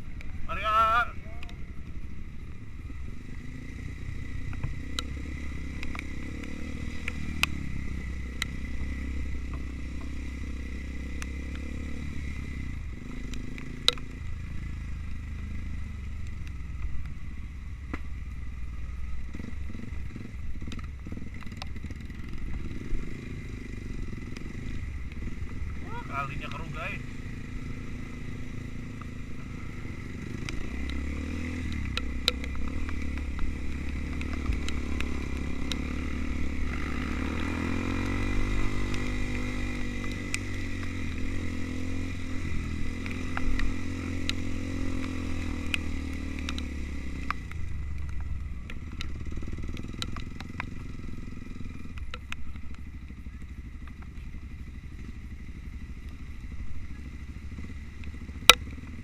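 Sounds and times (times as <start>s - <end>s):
motorcycle engine revving: 0.0s - 59.0s
sharp clicks and knocks: 31.7s - 35.9s.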